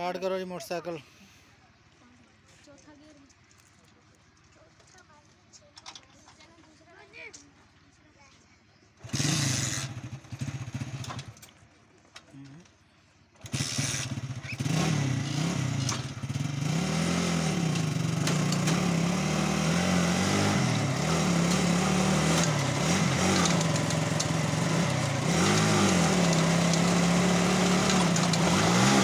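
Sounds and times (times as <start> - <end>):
motorcycle rickshaw engine running: 9.0 - 11.5, 13.3 - 29.0.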